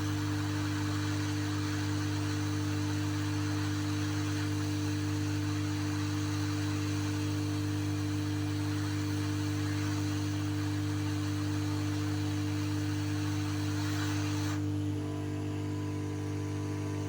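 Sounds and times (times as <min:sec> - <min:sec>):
electrical mains hum: 0:09.6 - 0:17.0.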